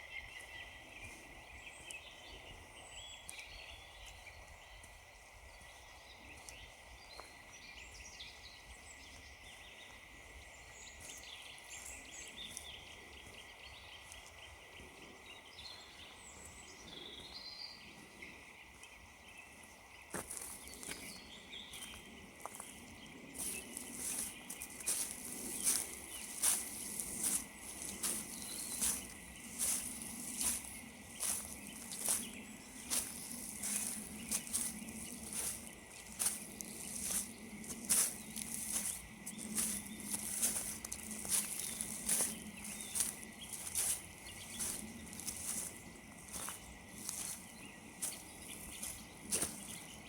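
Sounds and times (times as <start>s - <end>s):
small birds chirping: 0.0s - 50.0s
footsteps crunching on frozen leaves: 9.1s - 14.8s, 18.0s - 50.0s.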